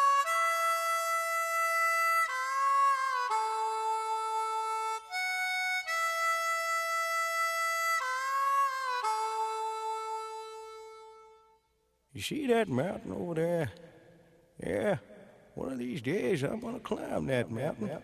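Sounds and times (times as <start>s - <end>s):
solo harmonica slow melody: 0.0s - 11.9s.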